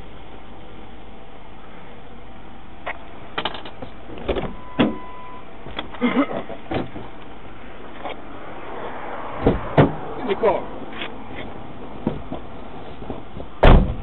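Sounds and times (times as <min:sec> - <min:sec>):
brief steady beep: 0:04.6 - 0:05.5
knocks against car body: 0:09.4 - 0:10.0, 0:12.0 - 0:14.0.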